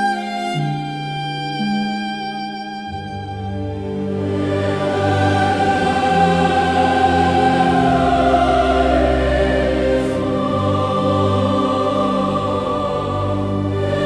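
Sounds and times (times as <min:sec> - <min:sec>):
sustained strings: 0:00.0 - 0:14.0
low bass drone: 0:03.6 - 0:14.0
wordless female choir vocals: 0:04.0 - 0:14.0.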